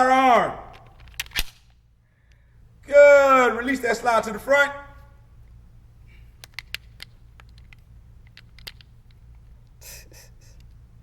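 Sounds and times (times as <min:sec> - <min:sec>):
steady low hum: 0:00.0 - 0:11.0
light sharp clicks and taps: 0:06.4 - 0:09.8.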